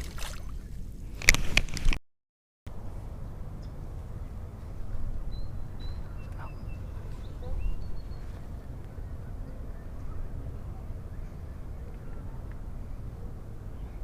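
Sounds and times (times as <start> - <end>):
high bird chirps: 5.3 - 8.5.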